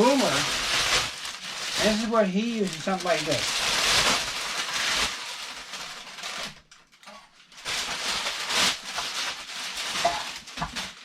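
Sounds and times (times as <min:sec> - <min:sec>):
packing material rustling: 0:00.0 - 0:11.0.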